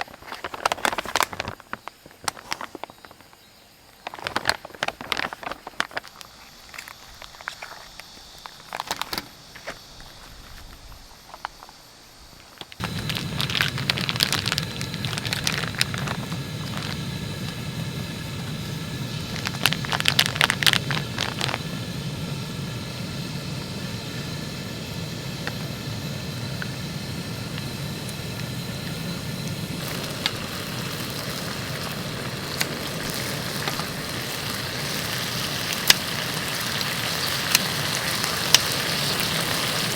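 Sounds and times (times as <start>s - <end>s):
cooking burner hissing: 12.6s - 39.9s
pan crackling and sizzling: 12.7s - 39.9s.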